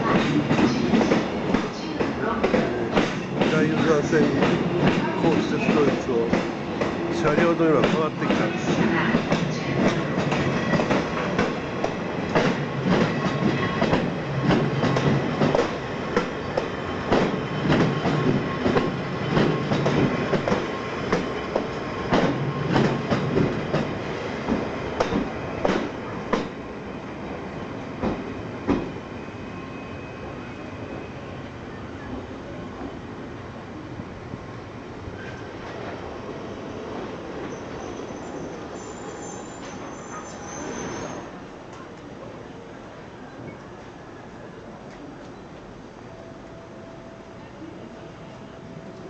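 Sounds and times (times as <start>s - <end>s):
train wheels clacking over joints: 0.0s - 26.6s
railway cars rumbling: 0.0s - 49.0s.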